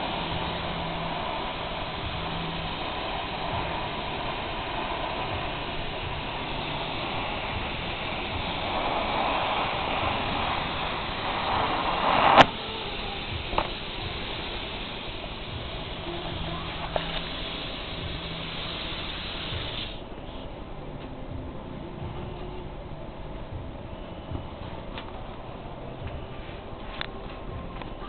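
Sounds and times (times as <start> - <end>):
sharp crack: 0.0 - 14.5
welding arc hissing: 0.0 - 20.5.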